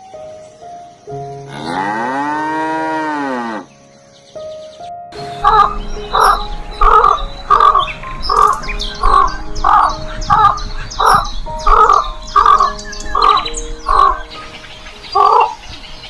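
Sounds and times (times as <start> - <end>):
quiet background music: 0.0 - 16.0
bird giving harsh caws: 5.4 - 14.2.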